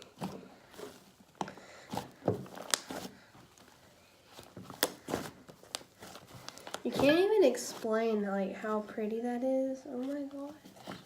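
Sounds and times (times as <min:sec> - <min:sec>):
slime squished and stretched: 0:00.0 - 0:03.2, 0:04.3 - 0:07.0.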